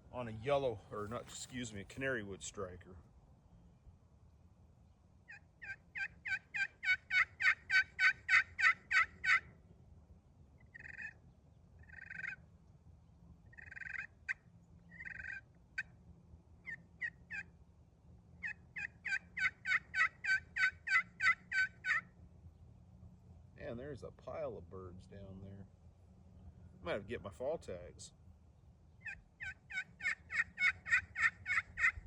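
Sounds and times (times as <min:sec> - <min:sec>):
turkey call drawn-out notes: 0:05.3 - 0:09.5, 0:10.6 - 0:11.2, 0:11.8 - 0:12.5, 0:13.5 - 0:16.0, 0:16.6 - 0:17.5, 0:18.4 - 0:22.1, 0:29.0 - 0:32.0
turkey pot call yelps: 0:05.3 - 0:09.5, 0:10.6 - 0:11.2, 0:11.8 - 0:12.5, 0:13.5 - 0:16.0, 0:16.6 - 0:17.5, 0:18.4 - 0:22.2, 0:29.0 - 0:32.0
turkey call clucks: 0:05.3 - 0:09.6, 0:10.6 - 0:11.2, 0:11.8 - 0:12.5, 0:13.5 - 0:16.0, 0:16.6 - 0:17.5, 0:18.4 - 0:22.2, 0:29.0 - 0:32.0.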